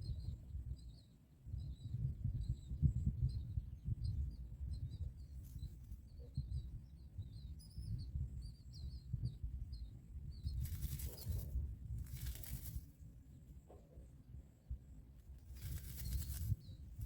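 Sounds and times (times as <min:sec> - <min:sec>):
birds chirping: 0:00.0 - 0:14.2
brief rustle: 0:10.6 - 0:12.9, 0:15.5 - 0:16.6.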